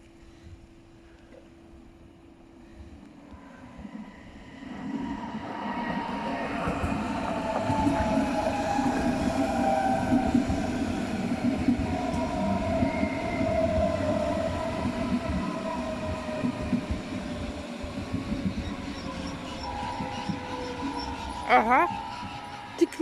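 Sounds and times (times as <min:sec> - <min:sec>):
electric train running: 0:03.3 - 0:23.0
axle squeal whining: 0:18.6 - 0:22.8.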